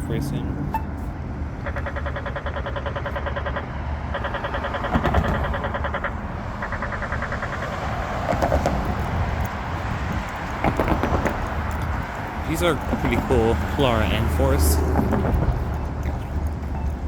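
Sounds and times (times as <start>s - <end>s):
traffic hum: 0.0s - 17.0s
pedestrian push-button signal ticking: 1.6s - 8.6s, 12.6s - 17.0s.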